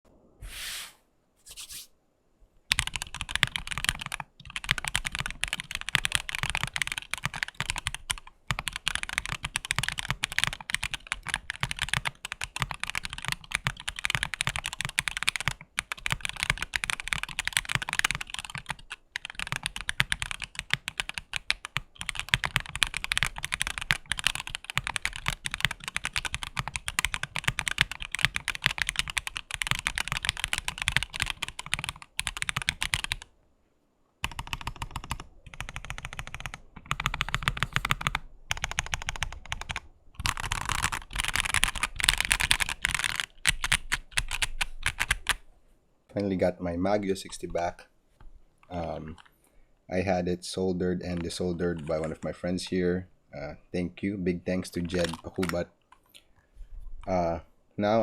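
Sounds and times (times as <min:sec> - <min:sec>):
mechanical keyboard typing: 0:02.7 - 0:33.3, 0:34.2 - 0:45.4, 0:51.1 - 0:52.6, 0:54.7 - 0:55.7.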